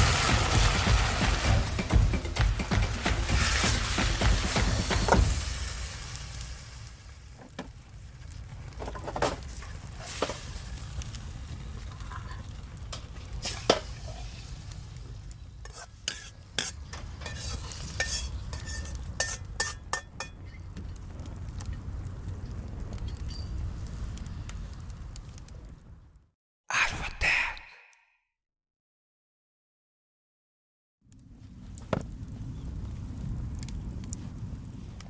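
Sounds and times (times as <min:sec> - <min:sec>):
pork sizzling in a wok: 0:00.0 - 0:01.8, 0:02.4 - 0:08.6, 0:09.4 - 0:20.1
metal utensil scraping pan: 0:15.7 - 0:19.8.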